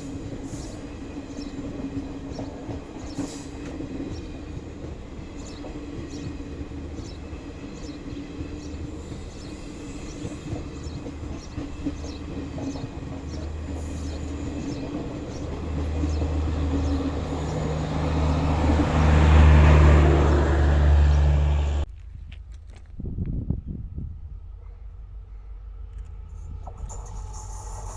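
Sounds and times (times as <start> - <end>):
train wheels clicking over rail joints: 0.0 - 21.9
train rumble: 0.0 - 27.9.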